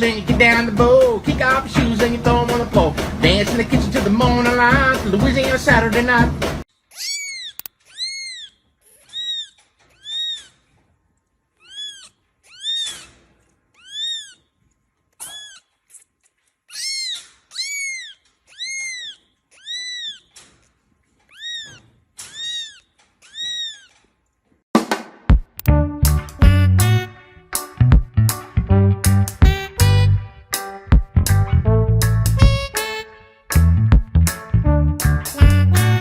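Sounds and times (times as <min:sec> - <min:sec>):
kitten mewing: 0:06.9 - 0:10.6, 0:11.6 - 0:14.5, 0:15.2 - 0:16.1, 0:16.7 - 0:20.4, 0:21.3 - 0:24.1.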